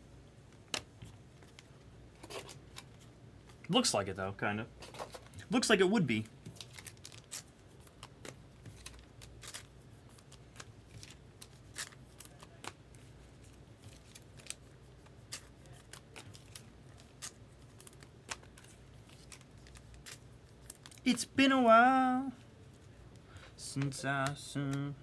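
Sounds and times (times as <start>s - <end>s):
trading cards being handled: 4.8s - 22.0s.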